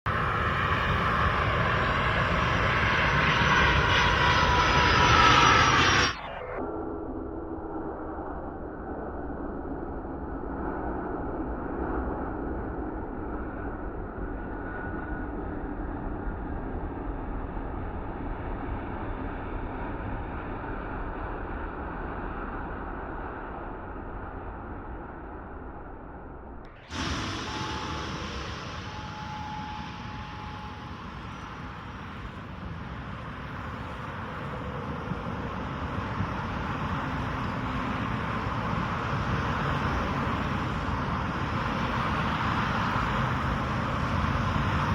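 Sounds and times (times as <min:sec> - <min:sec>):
jet engines roaring: 0:00.1 - 0:06.6, 0:26.7 - 0:44.9.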